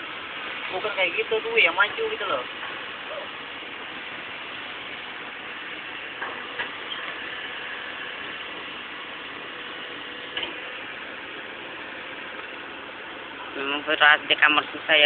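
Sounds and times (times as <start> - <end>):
excavator mechanical clatter: 6.0 - 11.6.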